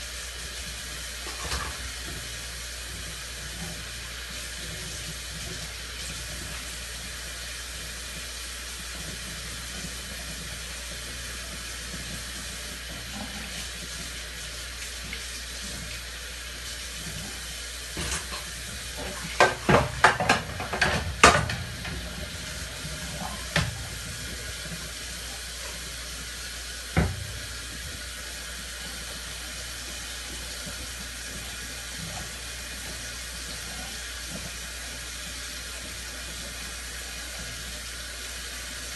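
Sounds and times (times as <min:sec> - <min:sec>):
water running in sink: 0:00.0 - 0:38.9
crockery clattering: 0:19.1 - 0:22.0.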